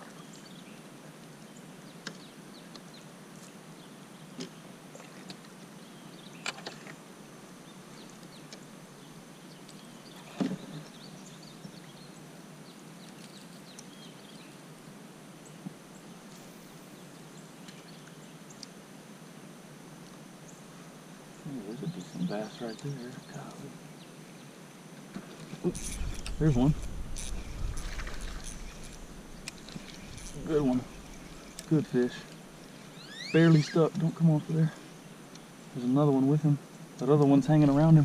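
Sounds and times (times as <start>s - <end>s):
faint bird chirps: 25.7s - 34.8s.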